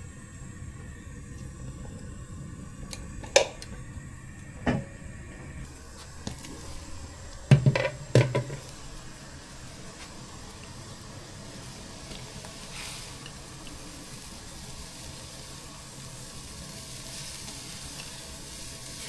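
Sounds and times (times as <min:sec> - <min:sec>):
steady low hum: 0:00.0 - 0:19.0
kitchen items knocking on counter: 0:07.5 - 0:08.6.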